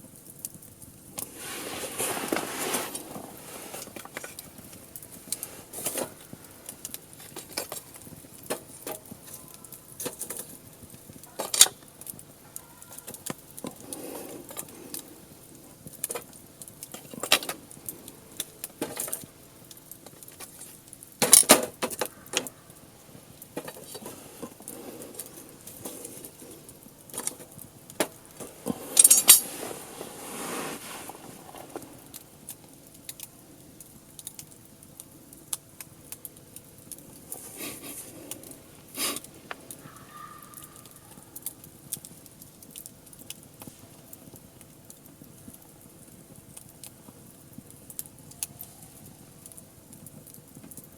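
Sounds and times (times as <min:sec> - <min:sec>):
firewood burning and crackling: 0:00.0 - 0:50.9
sharp pops and snaps: 0:31.7 - 0:37.5, 0:38.2 - 0:50.9.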